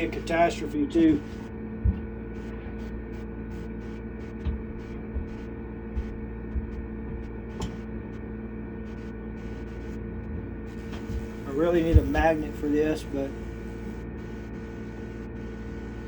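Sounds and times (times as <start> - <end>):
electrical hum: 0.0 - 16.0.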